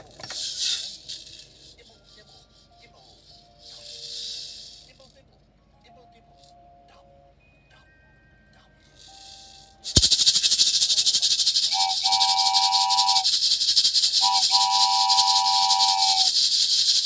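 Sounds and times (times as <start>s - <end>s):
shaken rattling: 0.0s - 5.2s, 9.0s - 17.0s.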